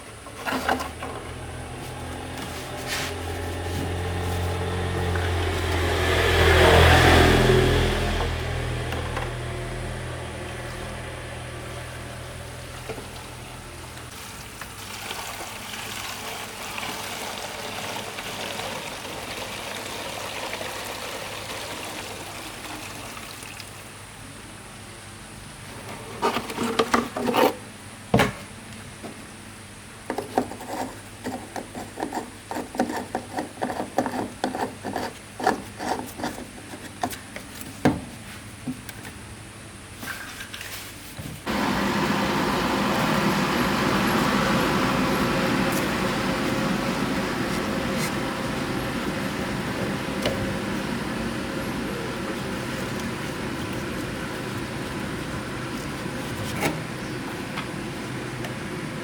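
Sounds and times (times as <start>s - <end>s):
engine running: 0.6s - 14.1s, 41.4s - 59.0s
rubbing scraping sound: 1.8s - 5.9s.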